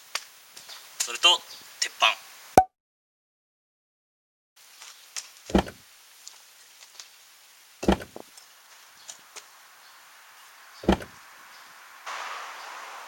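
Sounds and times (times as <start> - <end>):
concrete blocks thudding down: 7.8 - 8.2, 10.8 - 11.2
small knocks and clicks: 10.8 - 11.2.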